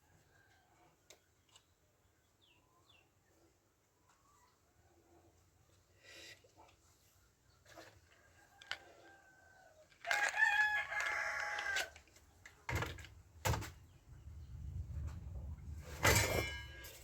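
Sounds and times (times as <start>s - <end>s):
rooster crowing: 8.4s - 12.0s.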